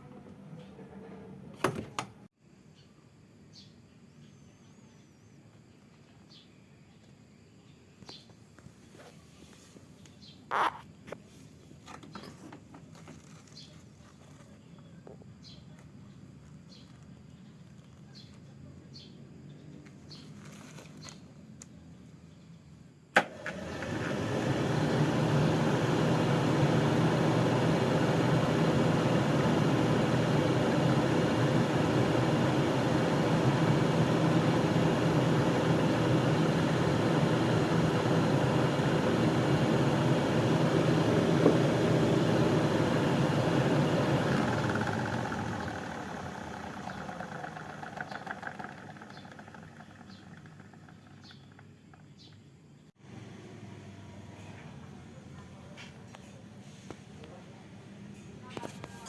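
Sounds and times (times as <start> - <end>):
electric cooling fan running: 23.2 - 52.0, 53.0 - 55.6.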